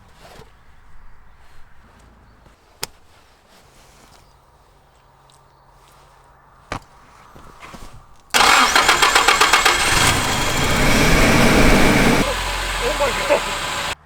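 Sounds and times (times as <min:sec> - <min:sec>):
car engine starting and running: 0:08.4 - 0:14.0.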